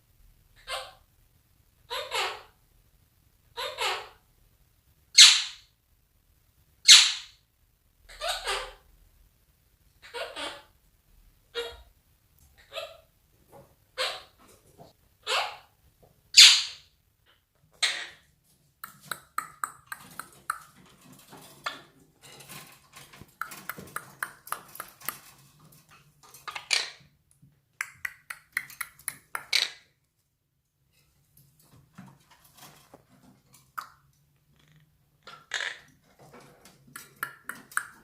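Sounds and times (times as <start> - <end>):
parakeet calls: 1.9 - 2.5, 3.6 - 4.2, 5.2 - 5.6, 6.8 - 7.4, 8.1 - 8.8, 10.0 - 10.7, 16.4 - 16.8
parakeet clicks and chirps: 18.8 - 20.8, 23.1 - 25.3, 27.7 - 29.8, 37.0 - 38.0.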